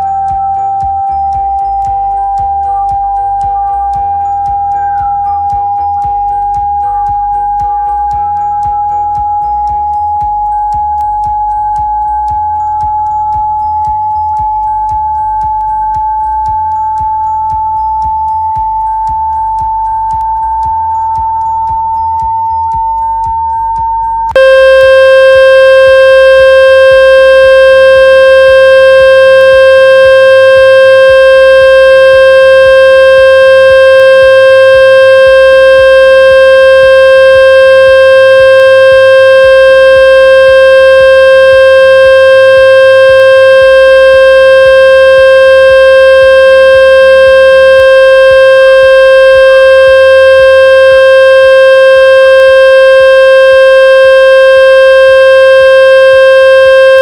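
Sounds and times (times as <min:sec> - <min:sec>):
loud buzzing tone: 0:00.0 - 0:03.0, 0:24.3 - 0:57.0
high clean tone: 0:00.0 - 0:57.0.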